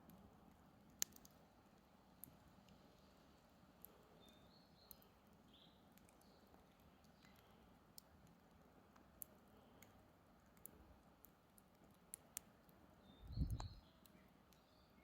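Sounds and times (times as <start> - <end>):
campfire crackling and popping: 0.1 - 2.8.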